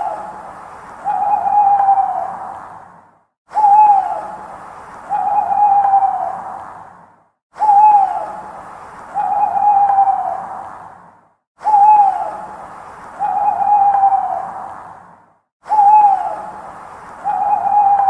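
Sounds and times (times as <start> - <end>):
owl hooting: 0.0 - 2.6, 3.5 - 6.6, 7.6 - 10.7, 11.6 - 12.6, 13.2 - 14.7, 15.7 - 18.0.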